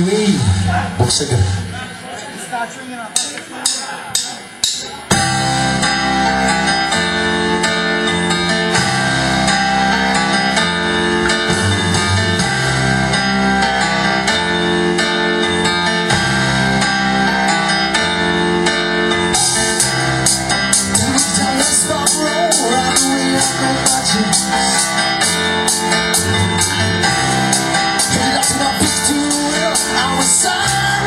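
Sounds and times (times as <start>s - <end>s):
drum strokes: 3.1s - 6.0s
band playing guitars bass drums: 3.2s - 31.0s.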